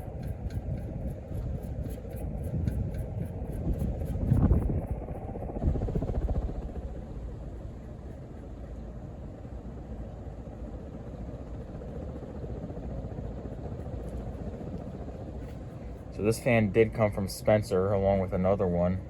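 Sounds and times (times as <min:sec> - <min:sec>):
flywheel rubbing on motor housing: 0:00.0 - 0:05.0
ceiling fan running: 0:00.0 - 0:19.0.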